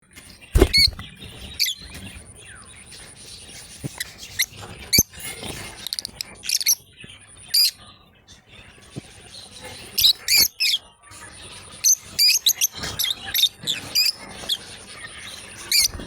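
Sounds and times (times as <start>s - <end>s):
lovebirds chirping: 0.4s - 5.1s.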